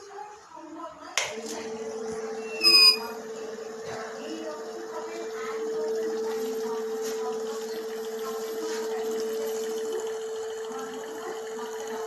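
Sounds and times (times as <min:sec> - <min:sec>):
water purifier pump humming: 0:00.1 - 0:12.0
high-pitched alarm tone: 0:02.4 - 0:03.1.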